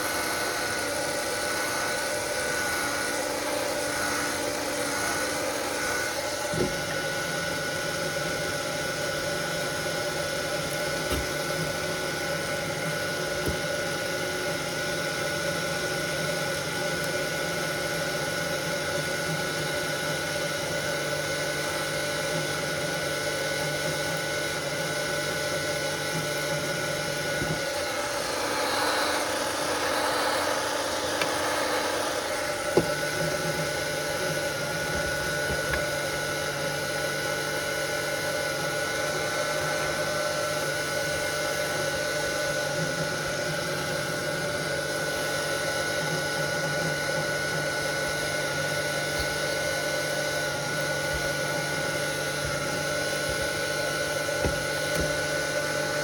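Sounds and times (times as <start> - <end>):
electrical machine hum: 25.4 - 44.6.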